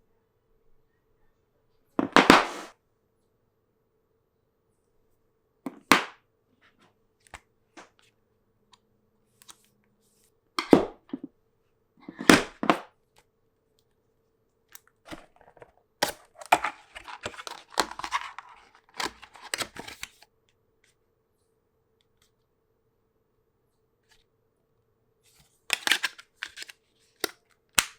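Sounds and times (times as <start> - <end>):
packaging rustling: 15.1 - 20.2, 25.7 - 26.7.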